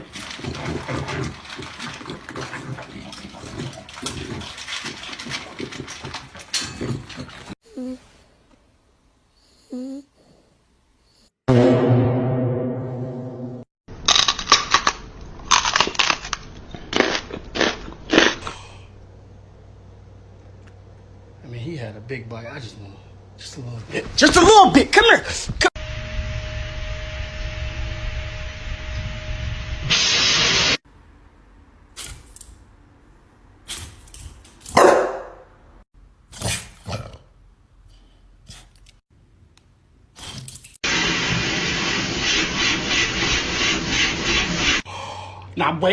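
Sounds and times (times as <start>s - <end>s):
dog barking: 34.8s - 35.4s.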